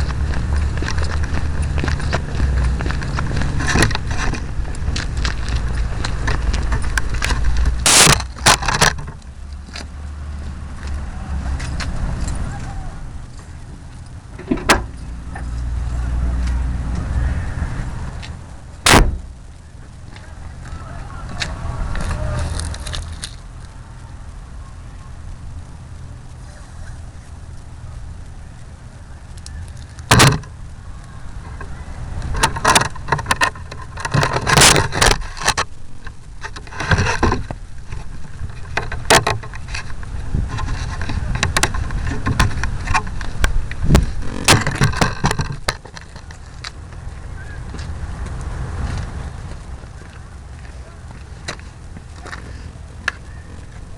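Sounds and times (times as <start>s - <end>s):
air buffeting camera: 0.0s - 9.2s, 18.8s - 19.5s, 32.2s - 47.0s
sharp knocks and rattles: 0.0s - 9.2s, 32.3s - 35.7s, 36.4s - 46.4s
wind buffeting rumble: 0.0s - 53.9s
sharp knock: 18.9s - 19.3s.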